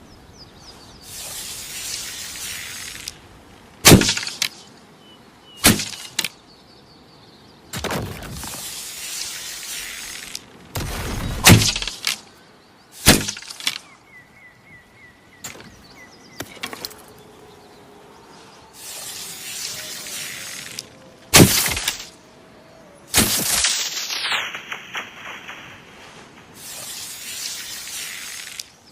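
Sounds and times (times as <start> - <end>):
hissing rush of air: 1.0 - 3.2, 8.5 - 10.4, 18.6 - 22.1, 23.1 - 28.7
arrows striking with cracking thuds: 3.8 - 4.6, 5.6 - 6.4, 10.3 - 12.3, 13.0 - 13.9, 21.3 - 22.1, 23.1 - 25.9.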